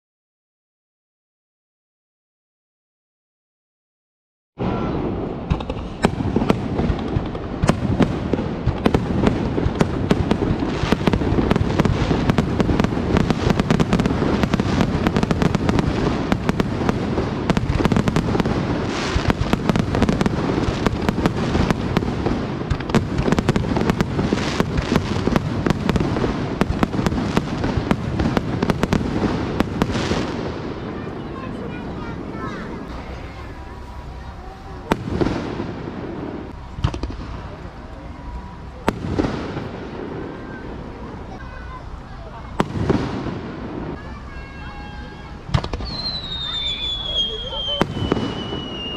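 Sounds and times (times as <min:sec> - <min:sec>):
fireworks bursts and pops: 0:04.6 - 0:48.9.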